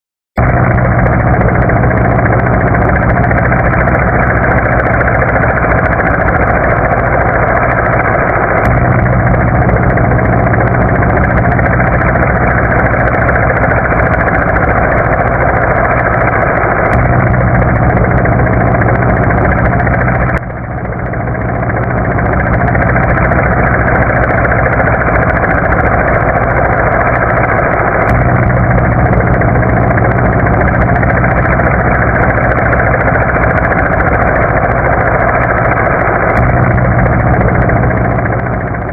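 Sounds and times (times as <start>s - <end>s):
helicopter engine and rotor drone: 0.4s - 38.9s.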